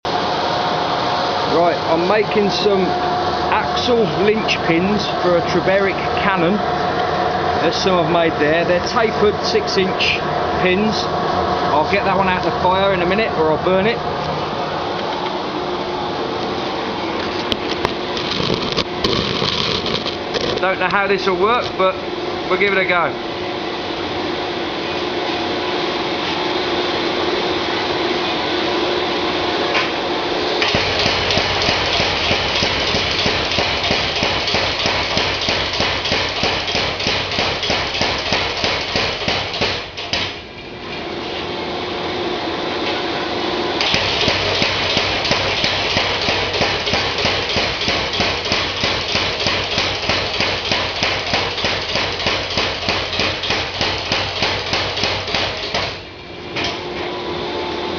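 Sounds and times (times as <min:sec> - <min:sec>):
power hammer pounding hot iron: 0:30.6 - 0:40.4, 0:43.8 - 0:56.1.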